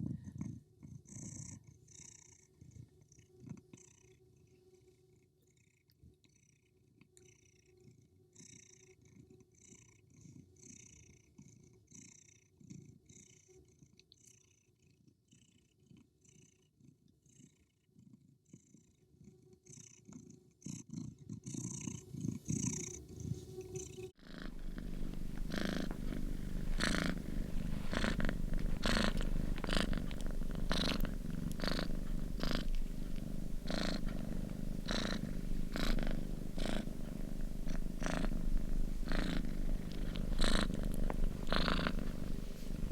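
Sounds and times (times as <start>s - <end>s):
cat purring: 0.0s - 42.9s.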